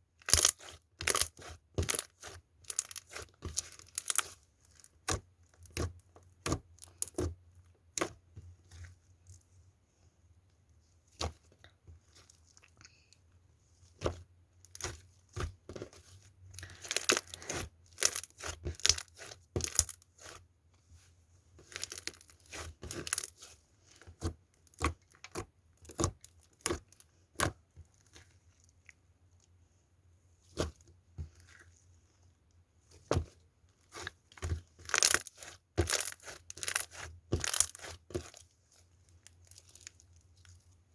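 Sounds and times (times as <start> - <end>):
slime squished by hand: 0.2 - 8.8, 13.9 - 20.4, 21.6 - 29.0, 33.2 - 40.7.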